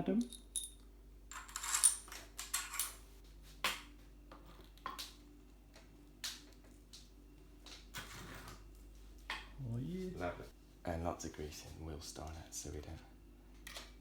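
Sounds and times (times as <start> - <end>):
metallic tool clinks: 0.2 - 2.9.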